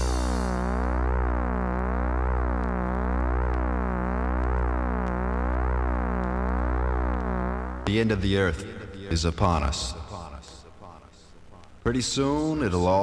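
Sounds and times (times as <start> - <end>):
synthesizer drone: 0.0 - 7.9
deep bass tone: 0.0 - 8.0.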